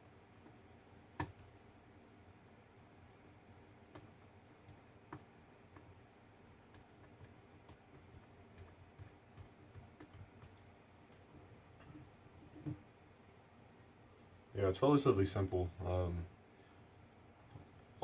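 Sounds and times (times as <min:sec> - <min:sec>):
small clicks and taps on plastic: 0:01.2 - 0:01.5, 0:03.9 - 0:05.9.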